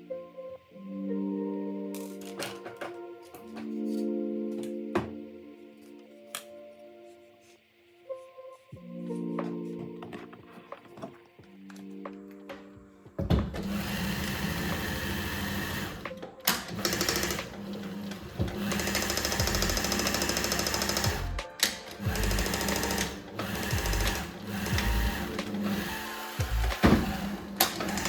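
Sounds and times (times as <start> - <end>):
sewing machine running: 13.6 - 16.0, 16.6 - 21.4, 22.0 - 28.0.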